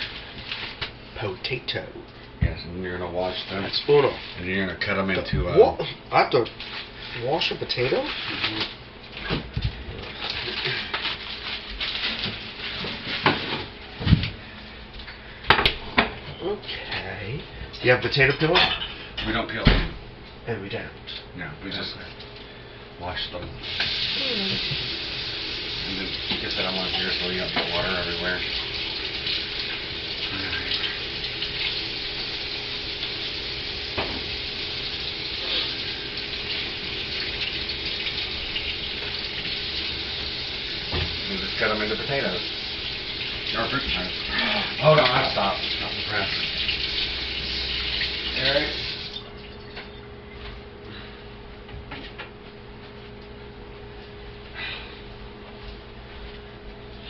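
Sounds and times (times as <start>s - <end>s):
tap water running into sink: 23.6s - 49.8s.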